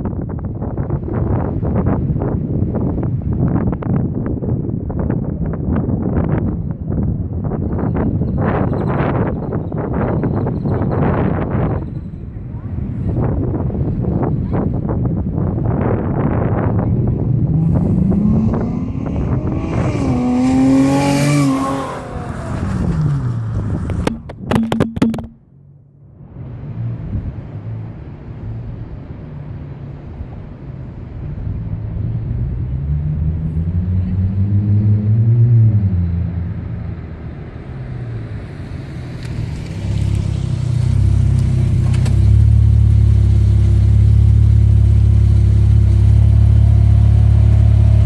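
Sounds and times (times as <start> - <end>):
car exhaust rumbling: 22.0 - 26.0, 31.0 - 48.0.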